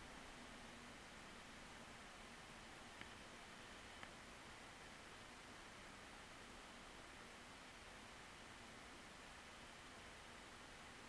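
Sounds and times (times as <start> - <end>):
faint tick: 4.0 - 4.2.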